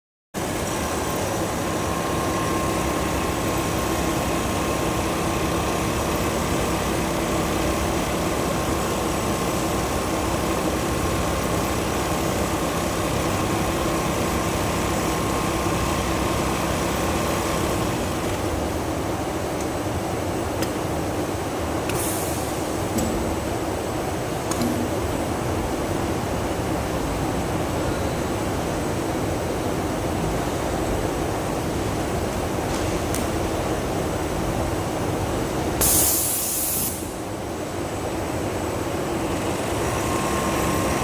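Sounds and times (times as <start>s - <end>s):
thin machine whine: 0.4s - 18.7s, 39.2s - 41.0s
sewing machine whir: 0.6s - 18.5s, 39.2s - 41.0s.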